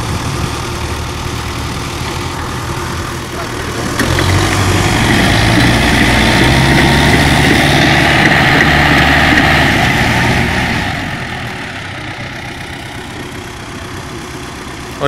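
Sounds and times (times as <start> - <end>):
heavy vehicle engine running: 0.0 - 15.0.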